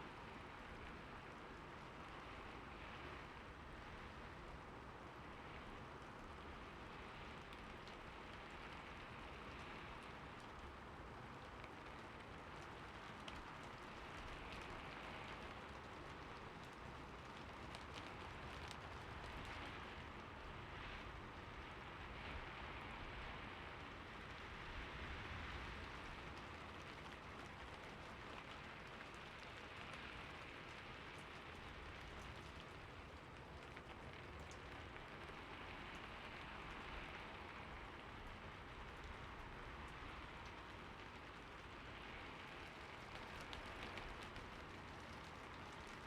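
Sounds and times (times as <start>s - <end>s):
sharp raindrop ticks: 5.2s - 46.0s
heavy rain falling: 23.2s - 46.0s.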